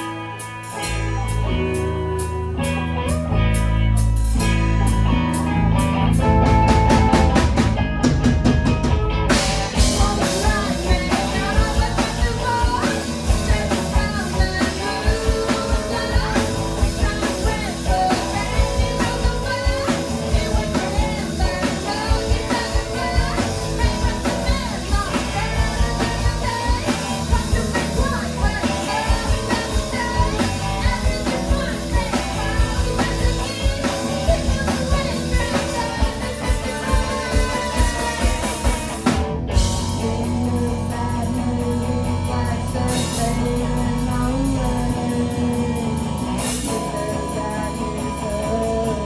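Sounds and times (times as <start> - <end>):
live rock band playing: 0.0 - 49.0
drum roll: 6.2 - 40.6.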